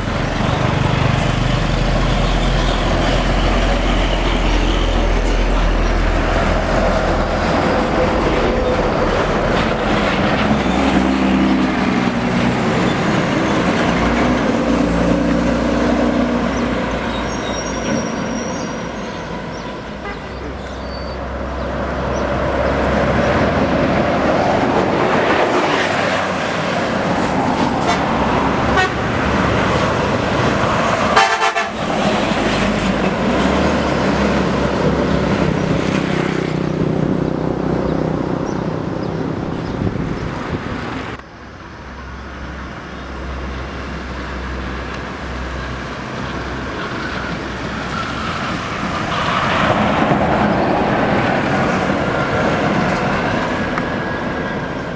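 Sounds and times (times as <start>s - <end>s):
bus engines running: 0.0s - 54.9s
vehicle horns tooting: 20.0s - 20.8s, 28.7s - 29.2s, 31.0s - 32.1s
tyre and wind noise: 31.8s - 41.2s.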